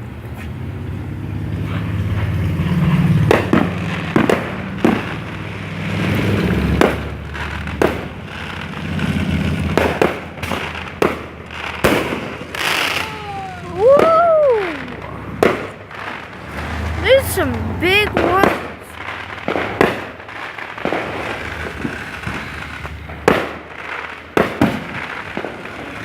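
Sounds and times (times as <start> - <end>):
fireworks bangs: 0.0 - 26.0.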